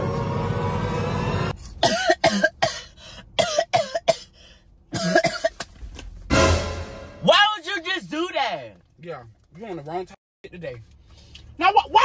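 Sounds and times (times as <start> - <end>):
woman coughing: 1.8 - 5.6.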